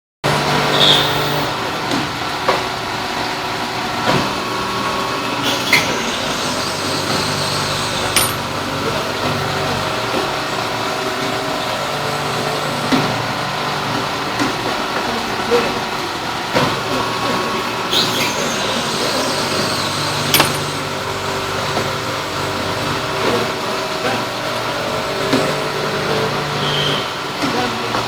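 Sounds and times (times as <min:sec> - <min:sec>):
industrial machinery humming: 0:00.2 - 0:28.0
sharp clicks and knocks: 0:08.2 - 0:08.6, 0:20.4 - 0:20.8.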